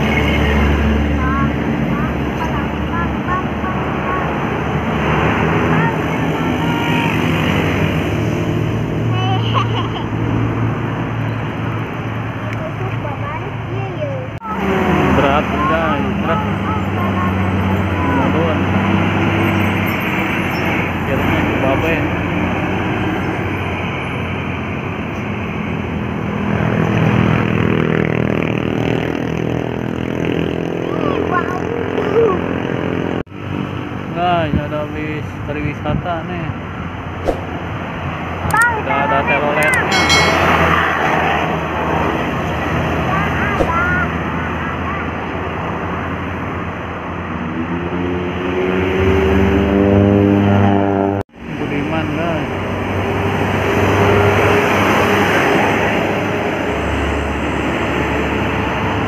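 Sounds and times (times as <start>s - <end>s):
bus diesel engine passing: 0.0s - 34.0s
road traffic noise: 0.0s - 59.0s.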